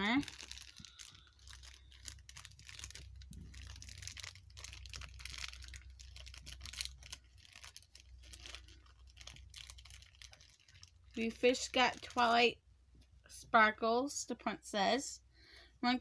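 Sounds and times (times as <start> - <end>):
plastic packaging crinkling: 0.0 - 12.5.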